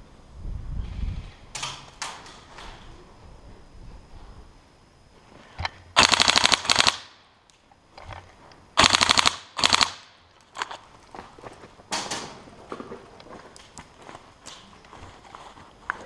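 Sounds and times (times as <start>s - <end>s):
airsoft rifle firing bursts: 6.0s - 7.2s, 8.8s - 10.2s.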